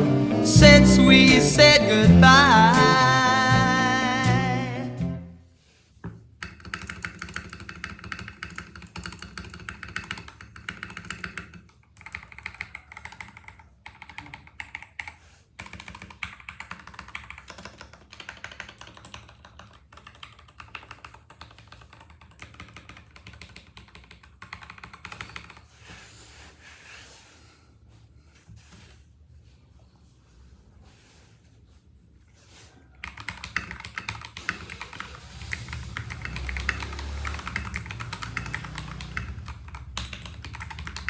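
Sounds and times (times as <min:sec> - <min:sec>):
mechanical keyboard typing: 0:06.4 - 0:25.6, 0:33.0 - 0:41.0.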